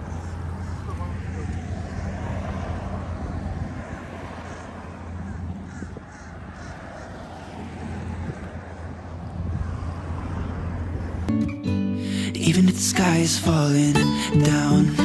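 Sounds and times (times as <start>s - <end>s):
bird cawing: 0.0s - 2.1s, 4.3s - 8.9s, 9.5s - 11.3s.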